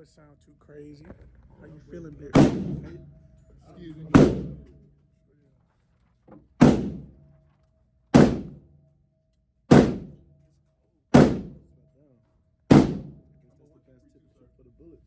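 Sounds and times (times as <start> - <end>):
gunshots indoors: 2.3 - 3.1, 4.1 - 4.8, 6.6 - 7.4, 8.1 - 8.8, 9.7 - 10.4, 11.2 - 11.8, 12.7 - 13.4.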